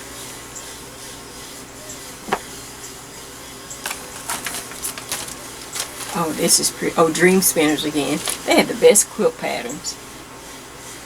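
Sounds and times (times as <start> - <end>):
low room hum: 0.0 - 11.0
paper rustling: 3.8 - 8.8.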